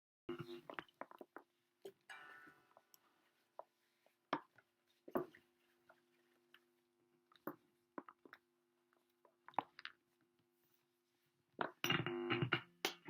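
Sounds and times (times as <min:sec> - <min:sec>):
faint amplifier hum: 0:11.6 - 0:13.0
guitar handling clicks and taps: 0:11.8 - 0:13.0.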